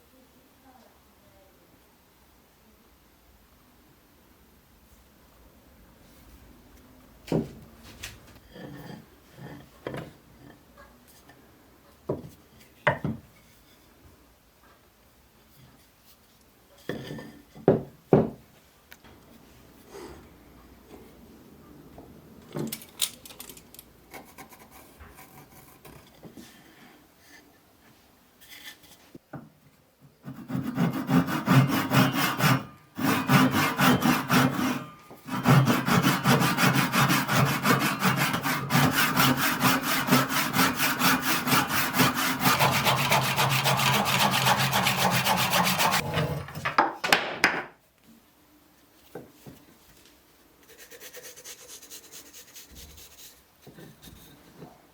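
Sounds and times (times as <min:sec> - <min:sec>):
hand tool sawing wood: 0:30.2 - 0:46.6.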